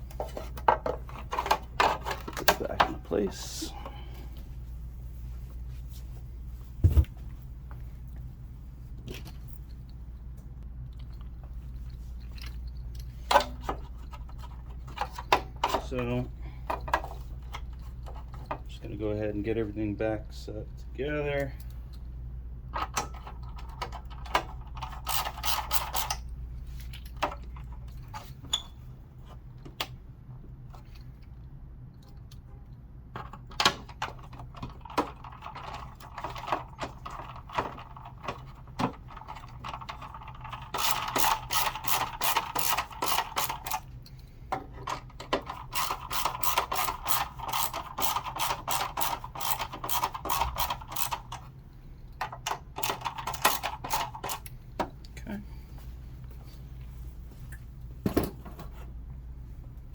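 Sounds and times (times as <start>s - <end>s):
rapid mechanical clicking of hand tool: 23.6s - 26.2s, 33.6s - 43.9s, 44.8s - 51.5s, 52.2s - 54.5s.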